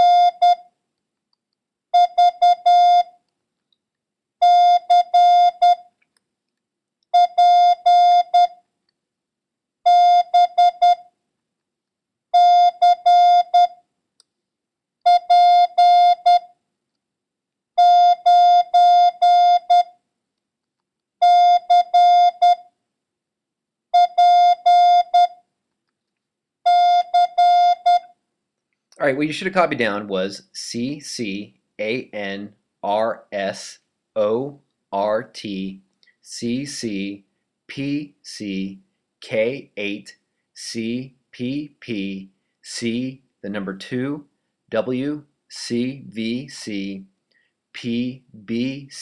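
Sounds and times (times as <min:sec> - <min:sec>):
morse code tone: 0:00.0 - 0:00.7, 0:02.0 - 0:03.2, 0:04.4 - 0:05.9, 0:07.2 - 0:08.6, 0:09.9 - 0:11.1, 0:12.4 - 0:13.8, 0:15.1 - 0:16.5, 0:17.8 - 0:20.0, 0:21.2 - 0:22.7, 0:24.0 - 0:25.4, 0:26.7 - 0:28.1.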